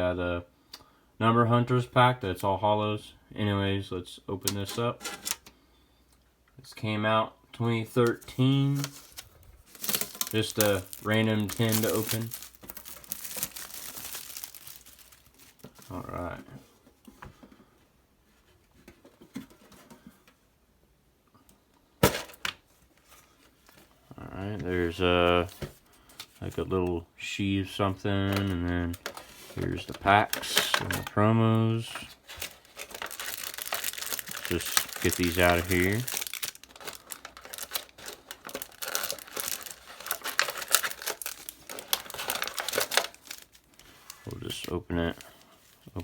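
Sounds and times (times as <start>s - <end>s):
foil packs crinkling: 7.9s - 16.4s, 28.2s - 46.0s
handling rustles: 7.9s - 17.6s, 28.2s - 46.0s.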